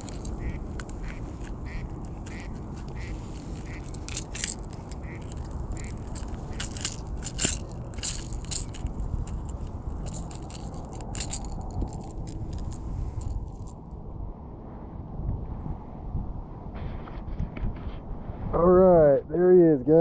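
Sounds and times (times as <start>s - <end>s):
fishing gear scrapes and clicks: 0.0s - 13.8s
steady low rumble: 0.0s - 19.8s.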